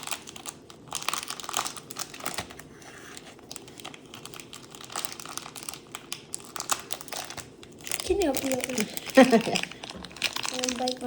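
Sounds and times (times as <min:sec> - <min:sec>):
wrapper crinkling: 0:00.0 - 0:11.0.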